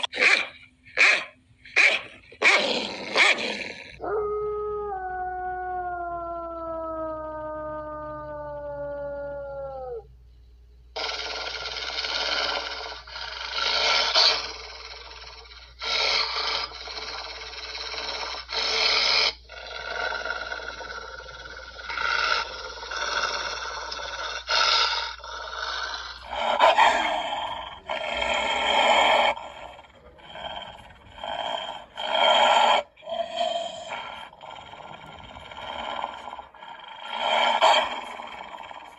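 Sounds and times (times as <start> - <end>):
canine growls and snarls: 1.7 - 8.4, 11.0 - 38.9.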